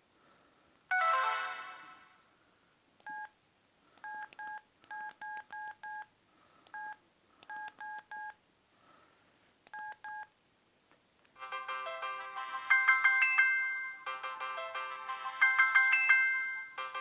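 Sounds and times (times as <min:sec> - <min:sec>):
phone keypad beeps: 0:03.0 - 0:03.3, 0:04.0 - 0:06.1, 0:06.7 - 0:08.4, 0:09.7 - 0:10.3.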